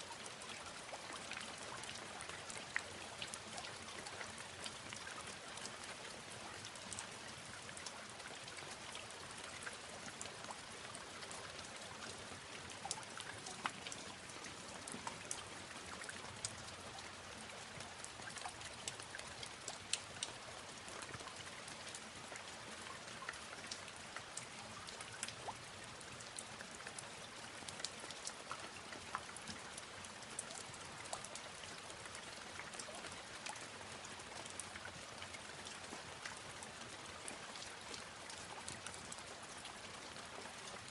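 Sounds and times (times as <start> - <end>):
steady rain falling: 0.0 - 40.9
raindrop clicks: 12.8 - 14.1.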